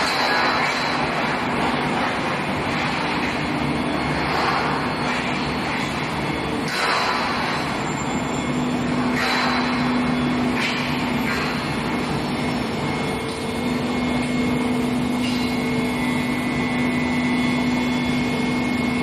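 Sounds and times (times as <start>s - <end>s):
industrial machinery rushing noise: 0.0s - 19.0s.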